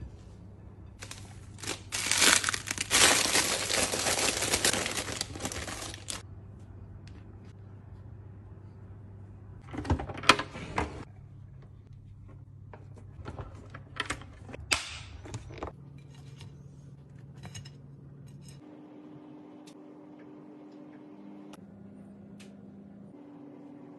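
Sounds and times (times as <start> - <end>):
kitchen clatters and rustles: 0.9 - 6.2, 12.1 - 18.6.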